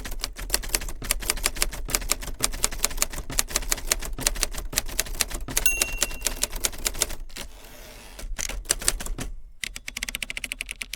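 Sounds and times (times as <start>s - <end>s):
typewriter margin bell: 5.7s - 7.0s.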